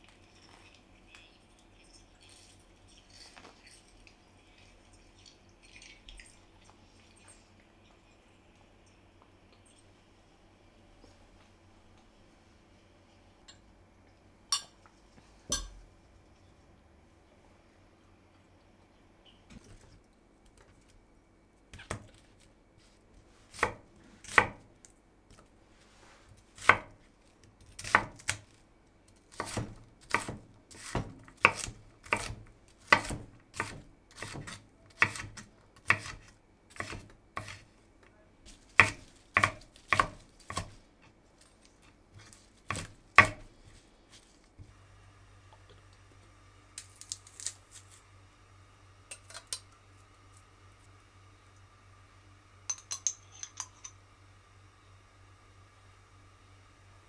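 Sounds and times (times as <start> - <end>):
knife chopping on cutting board: 29.3 - 37.6, 38.8 - 40.8, 42.2 - 43.5.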